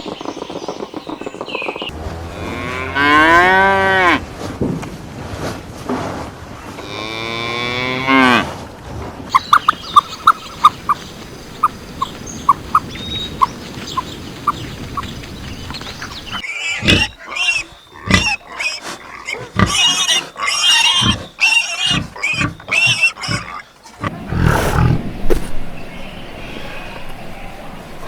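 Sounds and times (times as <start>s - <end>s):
pigs grunting and squealing: 16.3s - 25.4s.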